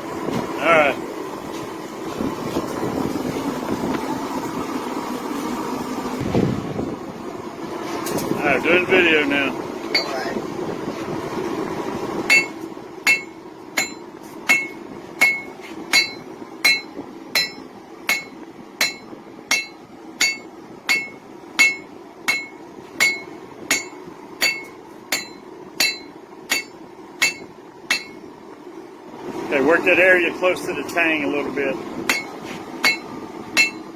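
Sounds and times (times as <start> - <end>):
hammer striking metal on anvil: 12.3 - 28.2, 32.1 - 33.9.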